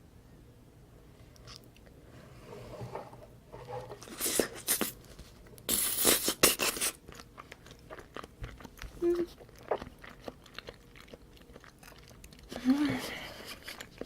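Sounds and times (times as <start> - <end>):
chewing and crunching: 4.0 - 14.0.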